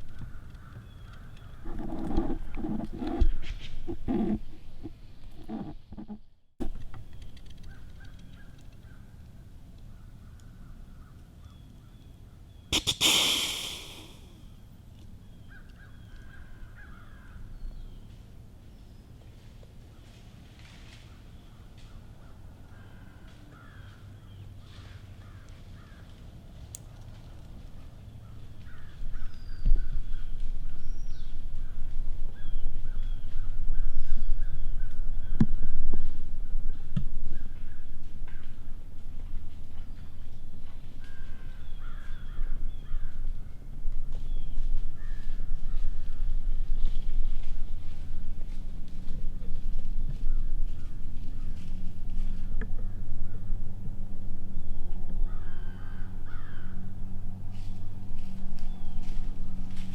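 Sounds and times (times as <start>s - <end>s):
distant crows cawing: 0.0s - 3.2s, 15.4s - 17.6s, 21.1s - 26.3s, 28.2s - 30.4s, 36.5s - 38.9s, 40.9s - 43.7s, 44.3s - 46.4s, 50.1s - 59.0s
deer snort-wheeze: 12.8s - 14.3s.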